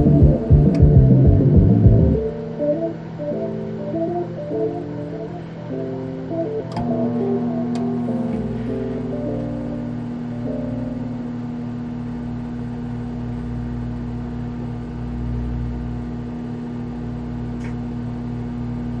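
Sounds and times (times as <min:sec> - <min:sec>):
microwave oven humming: 0:00.0 - 0:19.0
microwave click: 0:06.5 - 0:09.6.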